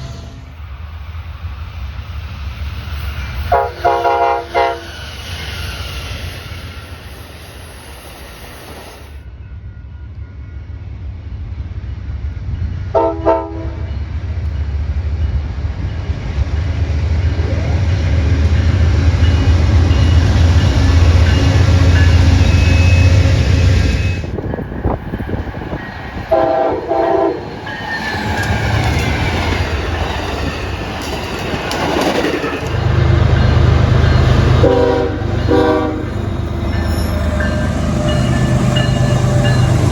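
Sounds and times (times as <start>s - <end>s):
passing train rumble: 0.0s - 39.9s
locomotive air horn toots: 3.5s - 5.0s, 12.9s - 13.9s, 26.3s - 27.6s, 34.5s - 38.3s.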